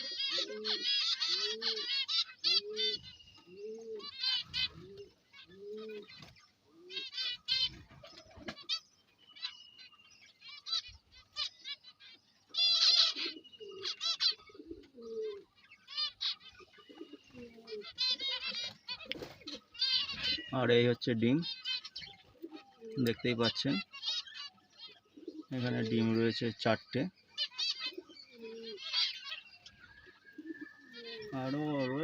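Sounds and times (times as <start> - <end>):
low cooing call: 0.0 - 1.9, 2.5 - 6.1, 13.1 - 15.5, 25.0 - 26.0, 27.9 - 28.8, 29.6 - 32.0
birds chirping and chattering: 0.0 - 32.0.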